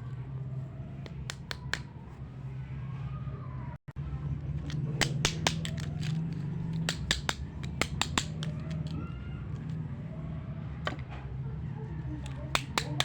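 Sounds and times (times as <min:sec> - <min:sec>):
plastic toy pieces clicking: 0:01.1 - 0:01.8, 0:04.6 - 0:09.8, 0:12.2 - 0:13.0.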